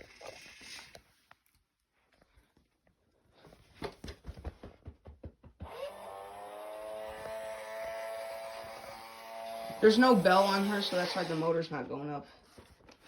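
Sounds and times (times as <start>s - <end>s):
electric motor whine and hum: 5.6s - 11.6s.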